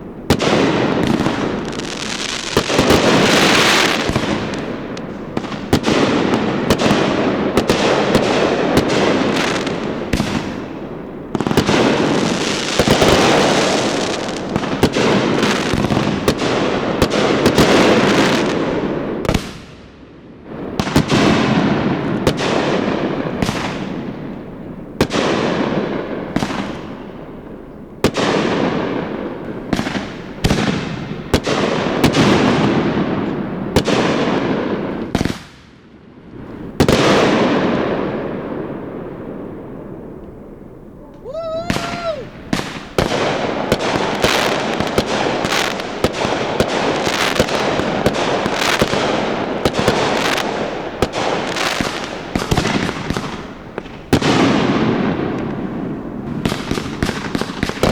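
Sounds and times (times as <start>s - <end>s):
fireworks booming and crackling: 0.0s - 57.9s.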